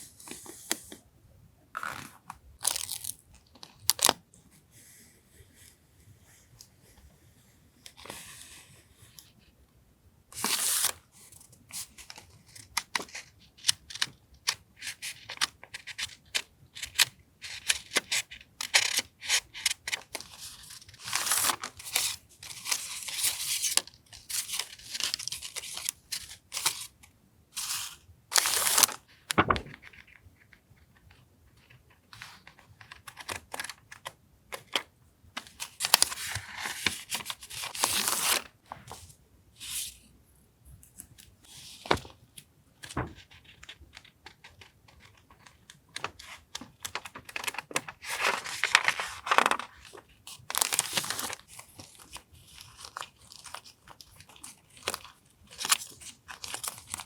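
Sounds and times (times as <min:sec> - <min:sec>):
paper rustling and tearing: 0:28.4 - 0:30.1, 0:42.8 - 0:57.0.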